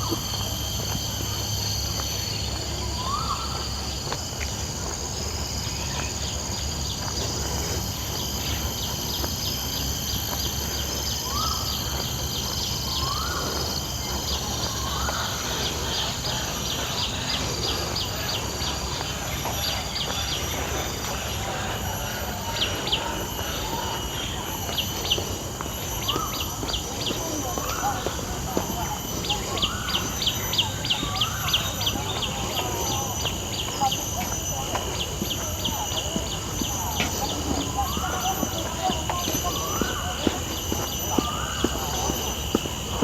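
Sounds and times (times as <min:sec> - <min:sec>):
high insect drone: 0:00.0 - 0:43.0
rapid insect ticking: 0:00.0 - 0:43.0
bird whistled calls: 0:02.2 - 0:04.0, 0:08.4 - 0:17.1.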